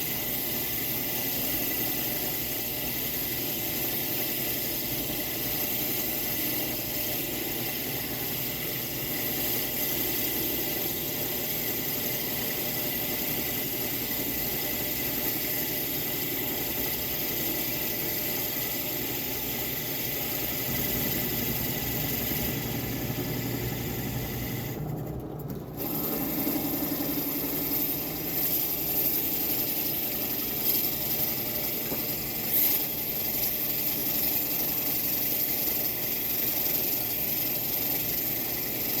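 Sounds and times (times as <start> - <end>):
small power tool running: 7.8 - 34.4.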